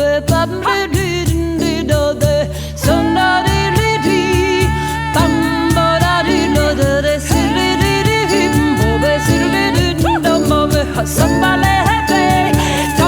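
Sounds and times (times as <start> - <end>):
woman singing held notes: 2.8 - 13.0.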